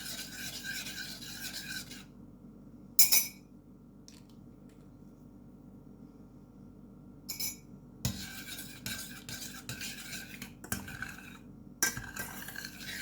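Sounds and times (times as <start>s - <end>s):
spoon stirring in a pot: 0.0s - 2.1s, 7.3s - 13.0s.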